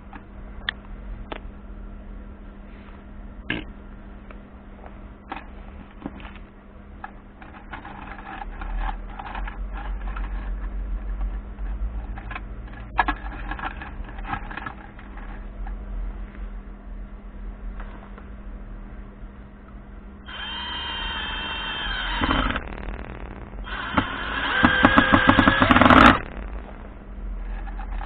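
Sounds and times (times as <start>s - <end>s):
steady low hum: 0.0s - 28.0s
plastic and metal parts clattering: 7.4s - 15.4s.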